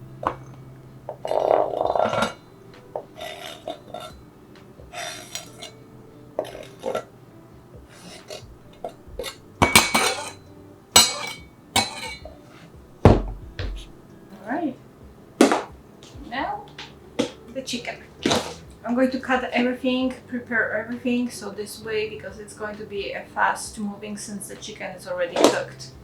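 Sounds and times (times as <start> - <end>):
dishes and utensils clattering: 0.0 - 14.5, 15.4 - 19.6, 24.6 - 25.9.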